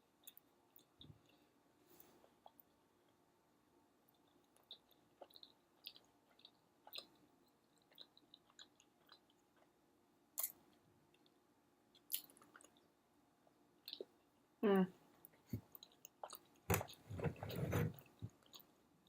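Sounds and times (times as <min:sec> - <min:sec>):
chewing soft bread: 0:00.0 - 0:14.4, 0:15.2 - 0:19.0
wet mouth clicks: 0:10.4 - 0:10.6.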